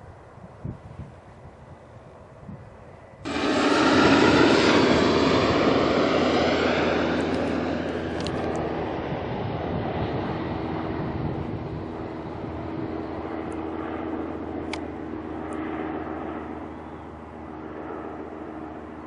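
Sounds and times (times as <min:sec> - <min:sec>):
propeller aircraft engine droning: 0:00.0 - 0:19.0.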